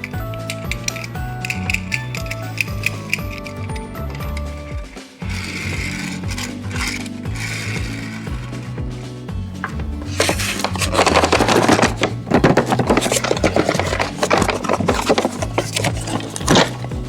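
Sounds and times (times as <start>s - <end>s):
plastic toy packaging handled: 0.0s - 8.6s, 10.1s - 17.0s
background music with bass line: 0.0s - 17.0s.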